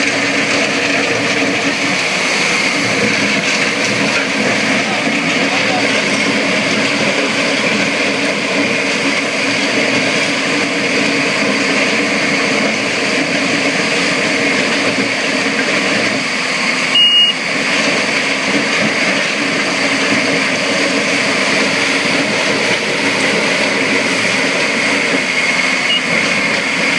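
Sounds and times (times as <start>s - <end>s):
heavy machinery engine running: 0.0s - 26.9s
short high beep: 16.9s - 17.4s, 25.8s - 26.2s.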